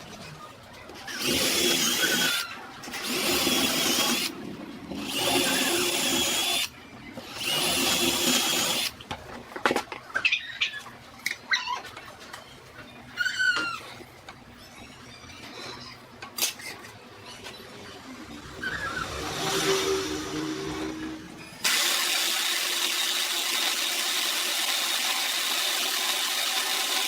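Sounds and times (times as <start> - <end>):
power tool whining: 19.0 - 27.0.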